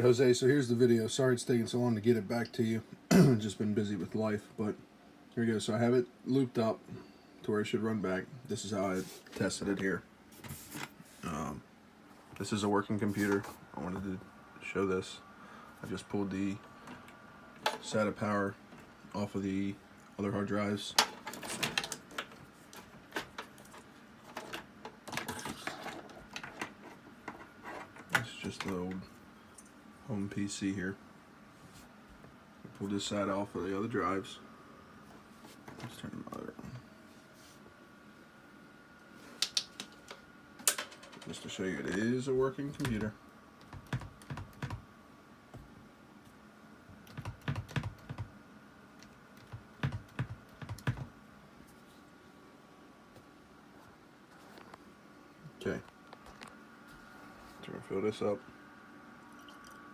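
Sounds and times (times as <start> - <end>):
faint steady hum: 0.0 - 59.9
computer keyboard typing: 42.8 - 44.8, 47.0 - 48.3, 49.4 - 51.1.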